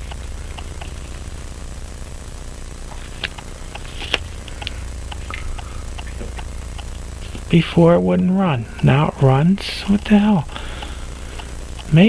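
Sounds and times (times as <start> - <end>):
low electrical hum: 0.0 - 12.0.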